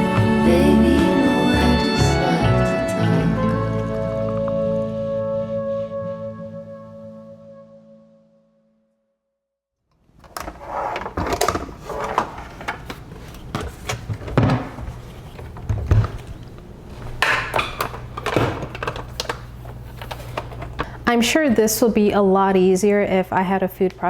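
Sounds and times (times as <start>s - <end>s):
knocks clicks and rustles of handling: 10.2s - 21.0s.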